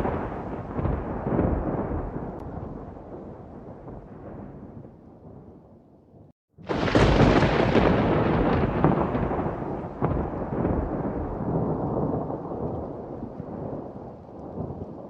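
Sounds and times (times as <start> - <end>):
thunder crack and rumble: 0.0 - 5.8, 6.6 - 15.0.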